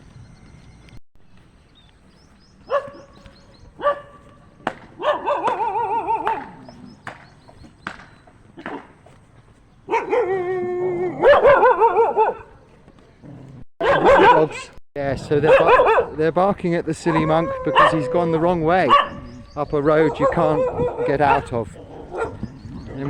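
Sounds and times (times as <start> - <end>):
dogs barking: 2.6 - 7.0, 9.8 - 12.7, 13.8 - 16.3, 17.0 - 23.0.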